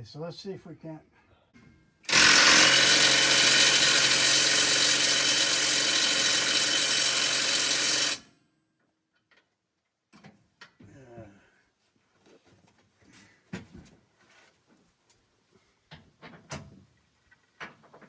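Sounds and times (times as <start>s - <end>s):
handheld power tool running: 2.1s - 8.3s.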